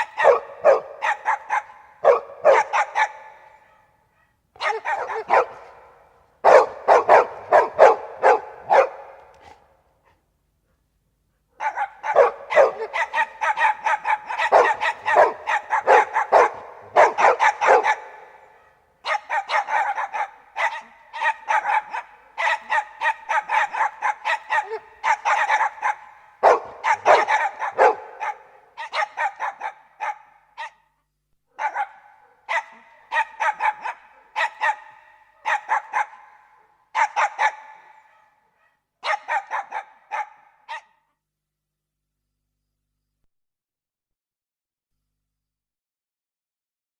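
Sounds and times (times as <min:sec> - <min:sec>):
dogs barking: 0:00.0 - 0:30.9, 0:31.6 - 0:41.0.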